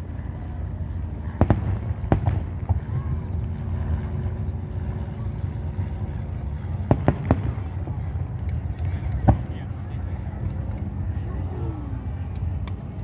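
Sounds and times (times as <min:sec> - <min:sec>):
steady low rumble: 0:00.0 - 0:13.0
fireworks bangs: 0:01.4 - 0:03.0, 0:06.9 - 0:07.7.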